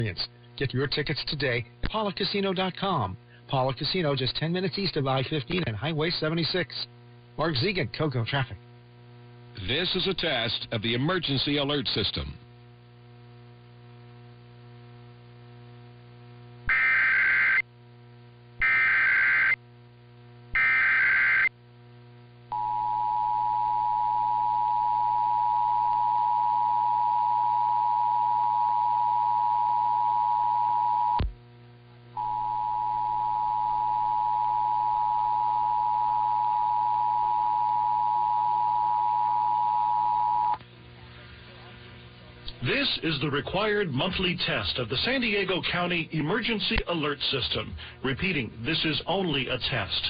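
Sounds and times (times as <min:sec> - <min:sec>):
faint mains hum: 0:00.0 - 0:50.0
screechy data bursts: 0:16.7 - 0:17.6, 0:18.6 - 0:19.6, 0:20.6 - 0:21.5.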